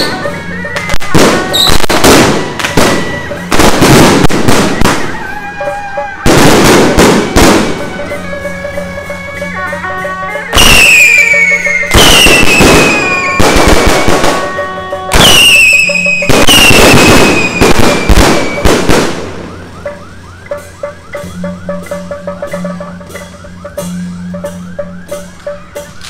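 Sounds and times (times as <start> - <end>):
firework crackling: 0.0 - 22.0
music with percussion: 0.0 - 26.0
whistling fireworks: 0.0 - 26.0.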